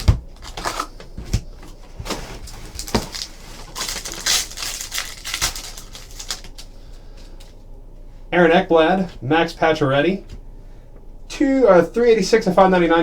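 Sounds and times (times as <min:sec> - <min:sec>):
wrapper crinkling and tearing: 0:00.0 - 0:07.5.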